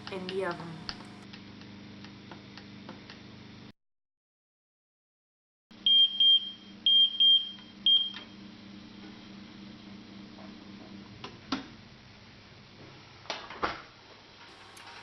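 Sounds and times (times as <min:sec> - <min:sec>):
steady low hum: 0:00.0 - 0:03.7
oven timer beeping: 0:05.8 - 0:08.4.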